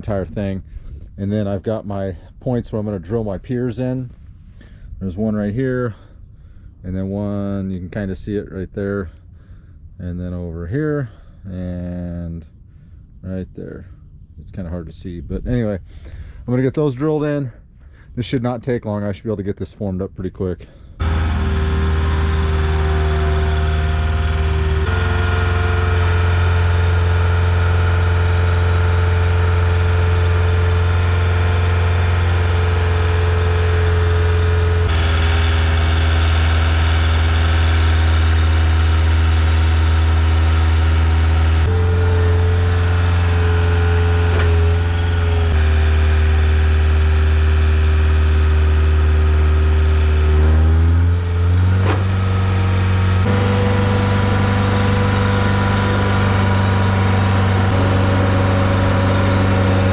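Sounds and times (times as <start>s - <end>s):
auger machine engine running: 21.0s - 59.9s.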